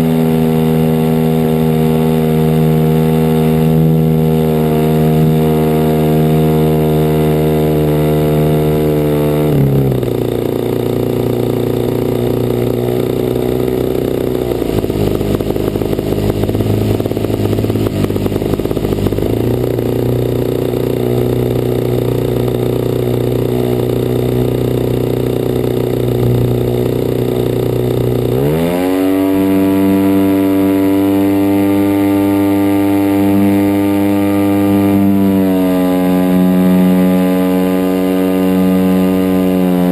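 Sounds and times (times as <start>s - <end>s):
model airplane engine running: 0.0s - 39.9s.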